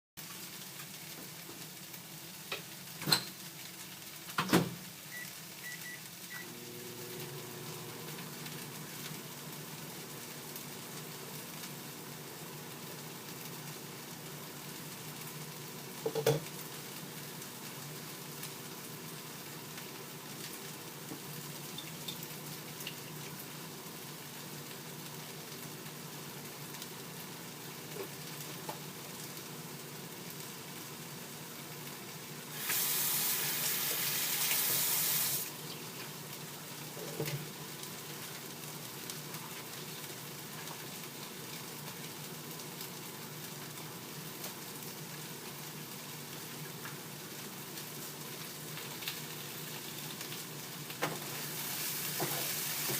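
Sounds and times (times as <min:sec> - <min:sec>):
food sizzling in a skillet: 0:00.2 - 0:52.9
water tap running: 0:06.3 - 0:13.4, 0:32.5 - 0:36.0, 0:51.2 - 0:52.9.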